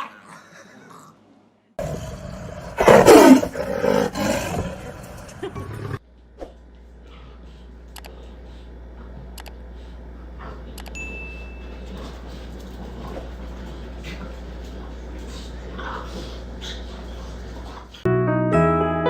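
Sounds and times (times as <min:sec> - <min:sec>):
low steady hum: 0:04.4 - 0:18.1.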